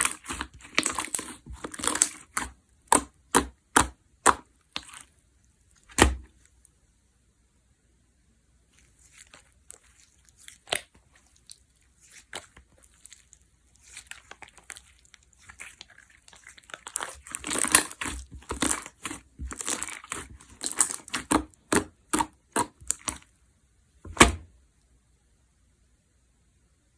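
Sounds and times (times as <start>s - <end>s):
slime squeezed with crackling pops: 0.0s - 5.0s, 13.8s - 23.2s.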